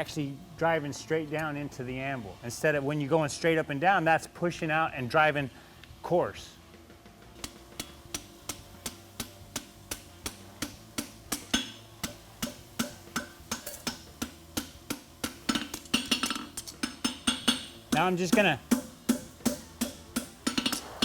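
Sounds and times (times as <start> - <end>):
anvil ringing: 7.4 - 21.0
hammer striking horseshoe on anvil: 7.4 - 21.0.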